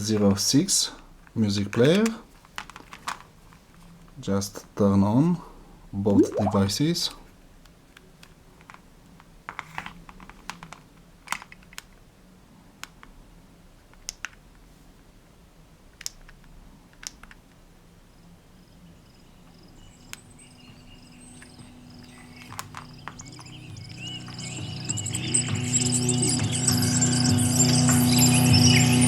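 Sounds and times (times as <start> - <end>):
faint music from speaker: 18.7 - 29.0.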